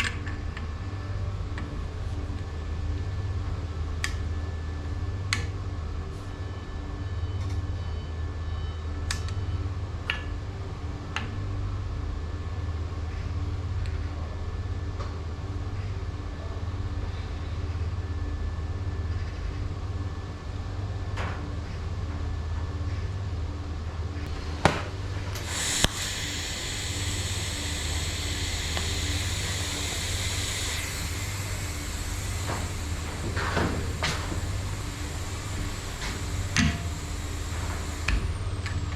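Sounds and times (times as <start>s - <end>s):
low machinery hum: 0.0s - 38.9s
hiss: 24.3s - 38.9s.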